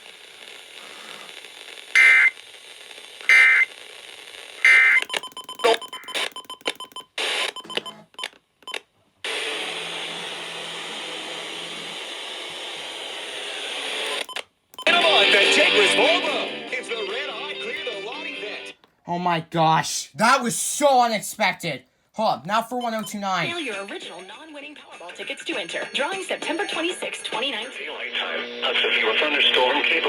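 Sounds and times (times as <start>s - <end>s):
static hiss: 0.0s - 5.0s
choppy radio audio: 14.8s - 30.0s.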